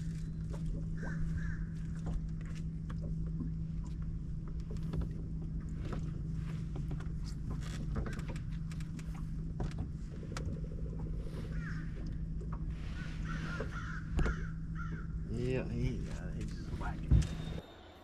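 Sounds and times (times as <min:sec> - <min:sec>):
boat motor running: 0:00.0 - 0:18.0
small clicks and knocks: 0:06.8 - 0:10.6.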